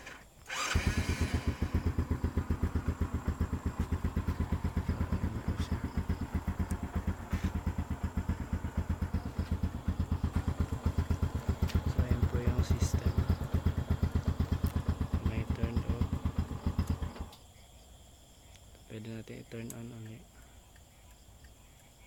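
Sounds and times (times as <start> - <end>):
motorcycle engine starting and idling: 0.0 - 17.5.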